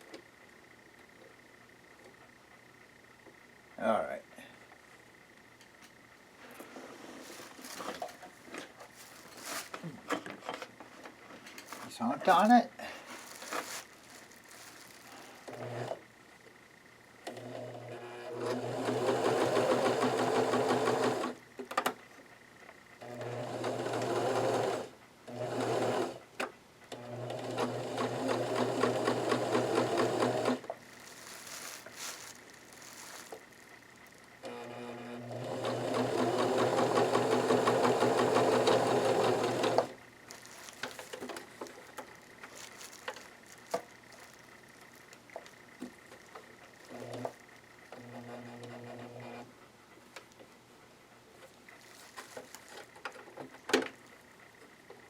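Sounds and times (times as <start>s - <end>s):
sewing machine stitching: 15.4s - 16.0s, 17.3s - 21.4s, 23.0s - 26.2s, 26.9s - 30.7s, 34.4s - 40.0s.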